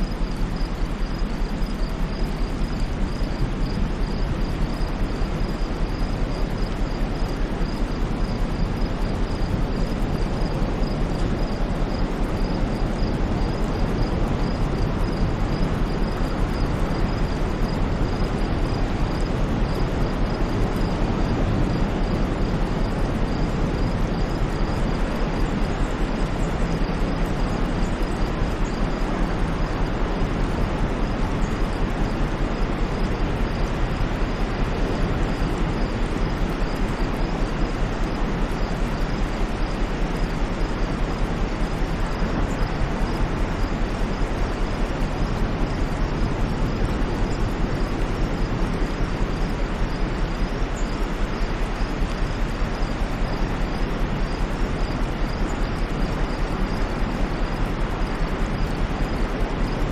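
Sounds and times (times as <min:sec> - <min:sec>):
steady white noise hiss: 0:00.0 - 0:59.9.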